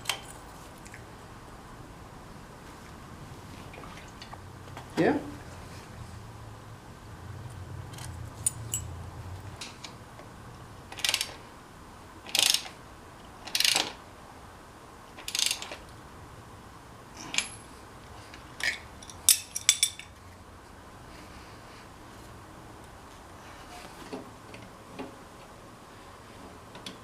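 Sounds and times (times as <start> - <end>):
ratchet clicking: 10.9 - 11.4, 12.3 - 12.8, 13.4 - 14.0, 15.2 - 15.8
sharp metal clicks: 10.9 - 11.4, 12.3 - 12.8, 15.2 - 15.8.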